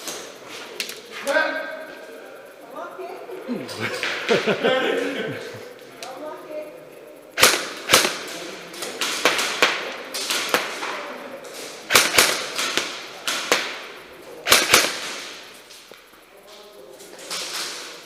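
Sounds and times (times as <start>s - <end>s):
airsoft gun shots: 7.4s - 8.4s, 9.0s - 10.9s, 11.9s - 15.5s.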